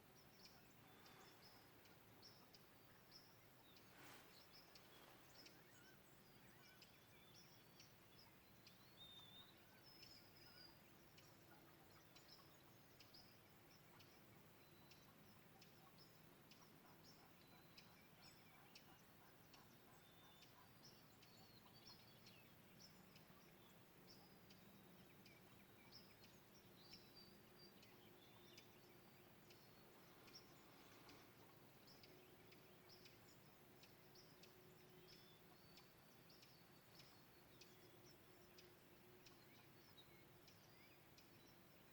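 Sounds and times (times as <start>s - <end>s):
faint birdsong: 0.0s - 41.9s
low steady hum: 20.9s - 41.9s.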